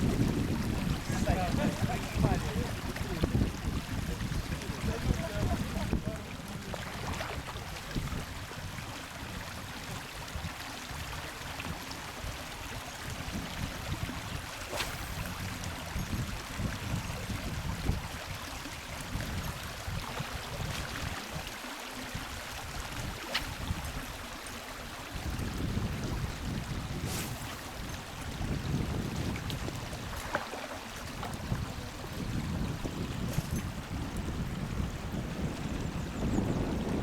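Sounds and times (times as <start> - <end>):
wind rumble on microphone: 0.0 - 37.0
river water rushing: 29.7 - 32.1.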